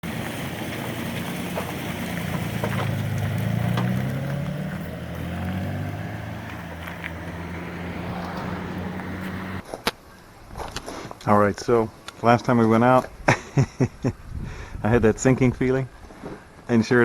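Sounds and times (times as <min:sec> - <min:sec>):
engine running: 0:00.0 - 0:09.6.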